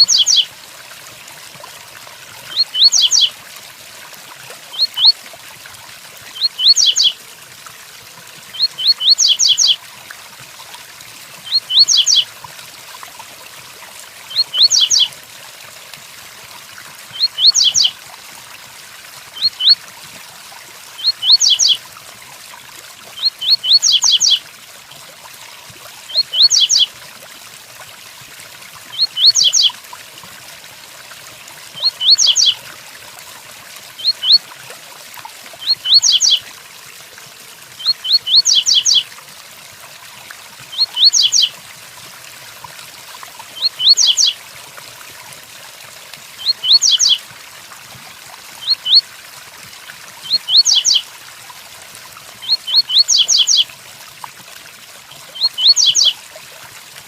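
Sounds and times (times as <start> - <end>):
seedeater whistled song: 6.4 - 7.1.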